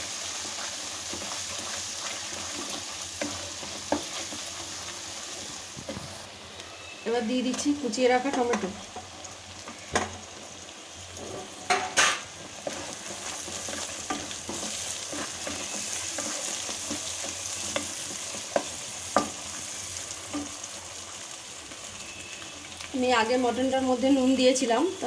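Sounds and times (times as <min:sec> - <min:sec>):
food sizzling in a hot pan: 0:00.0 - 0:25.0
spatula knocking and scraping pan: 0:01.1 - 0:04.5, 0:11.3 - 0:19.4.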